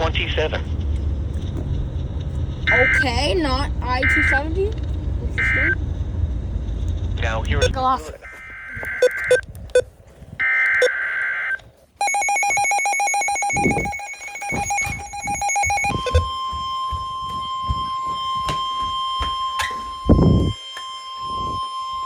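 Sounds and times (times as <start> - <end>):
rapidly pulsing electronic alarm beep: 2.6 - 4.6, 5.4 - 5.8, 7.5 - 9.4, 10.4 - 22.0
digital data tones: 2.6 - 4.7, 5.4 - 5.8, 7.2 - 9.9, 12.0 - 22.0
steady warning alarm tone: 2.6 - 6.0, 7.5 - 9.4, 10.4 - 22.0.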